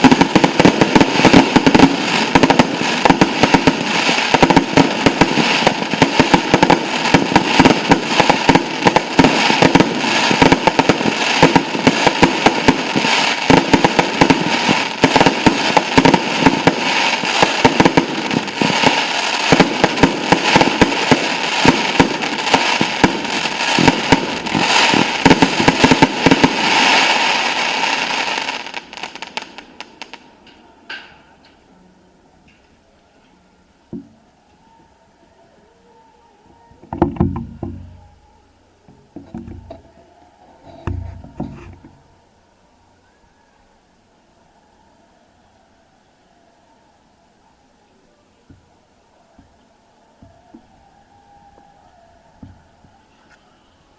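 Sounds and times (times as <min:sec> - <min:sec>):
fireworks bangs: 0:00.0 - 0:30.6, 0:36.5 - 0:42.2, 0:49.3 - 0:53.9
fireworks crackling: 0:00.0 - 0:31.7, 0:36.4 - 0:42.3.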